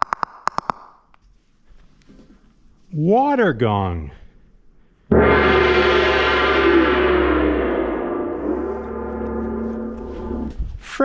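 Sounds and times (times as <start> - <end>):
water gong ringing: 5.1 - 10.5.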